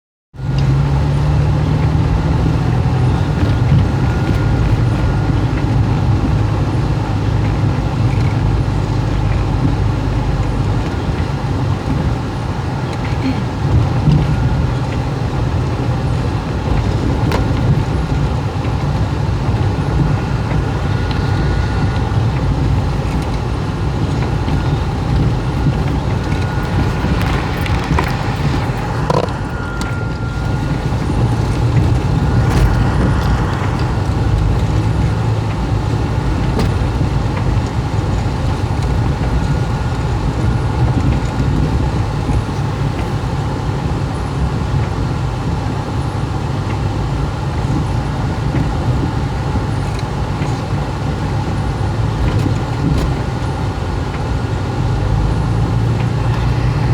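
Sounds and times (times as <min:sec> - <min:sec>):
traffic passing: 0:00.4 - 0:56.9
brief high whine: 0:18.7 - 0:36.7, 0:55.2 - 0:56.9.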